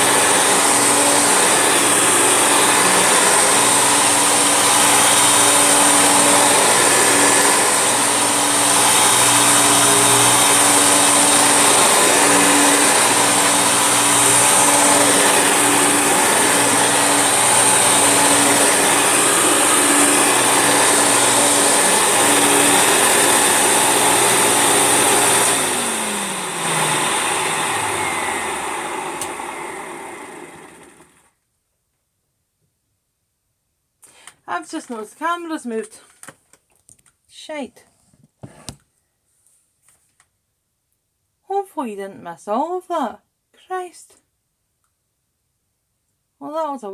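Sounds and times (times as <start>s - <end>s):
vacuum cleaner motor running: 0.0s - 31.3s.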